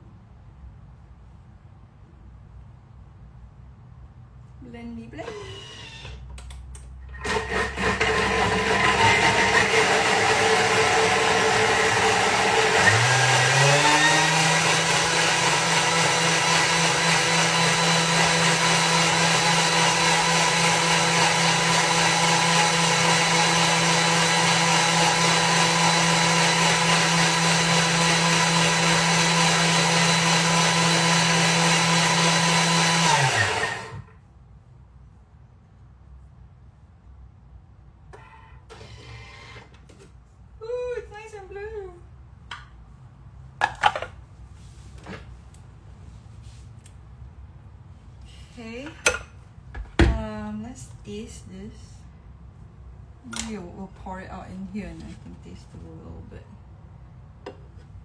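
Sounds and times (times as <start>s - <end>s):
blender motor running: 5.2s - 6.2s, 7.1s - 34.1s.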